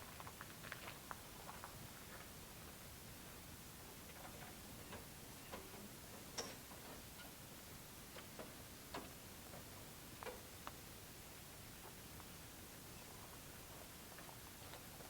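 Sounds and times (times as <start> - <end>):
light clicks and ticks: 8.1 - 10.8.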